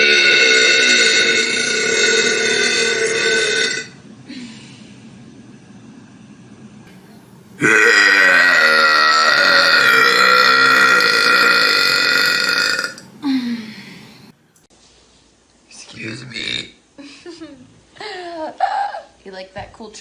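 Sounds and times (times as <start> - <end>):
person belching: 0.0 - 4.0, 7.6 - 13.1, 16.3 - 16.8.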